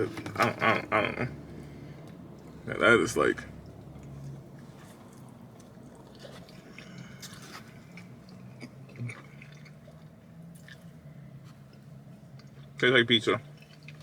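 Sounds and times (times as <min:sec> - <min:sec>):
low steady hum: 0:00.0 - 0:14.0
person chewing with mouth smacks: 0:03.7 - 0:12.7.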